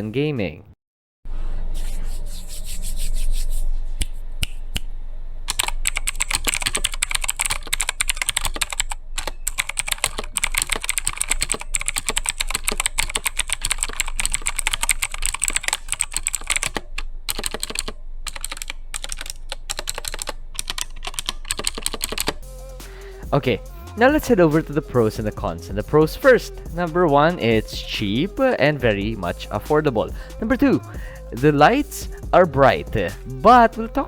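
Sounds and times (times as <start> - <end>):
mechanical keyboard typing: 5.5 - 22.4.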